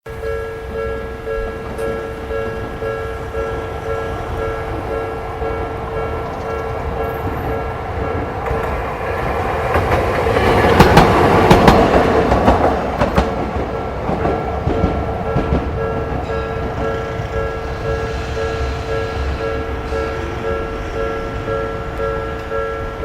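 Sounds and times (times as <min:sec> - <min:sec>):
level crossing bell ringing: 0:00.1 - 0:07.7, 0:15.2 - 0:23.0
tram wheels clacking over rail joints: 0:00.1 - 0:23.0.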